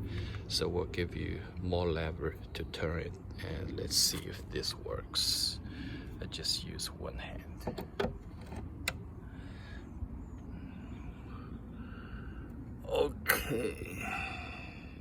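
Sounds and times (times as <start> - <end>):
steady low rumble: 0.0 - 15.0
man breathing hard and grunting: 13.6 - 15.0.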